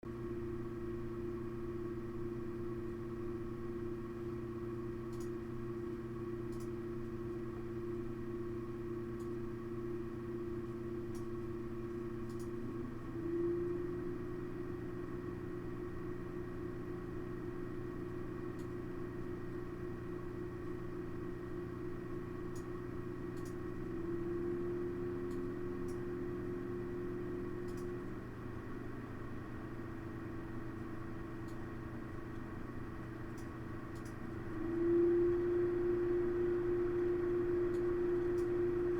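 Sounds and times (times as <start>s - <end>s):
computer fans humming with tone: 0.1s - 38.9s.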